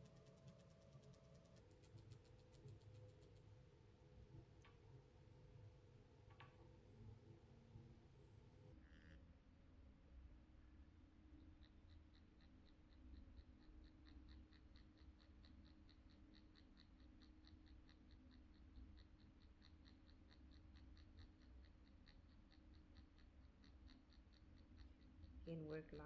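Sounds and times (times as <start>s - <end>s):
tattoo machine humming and ticking: 11.4s - 26.0s.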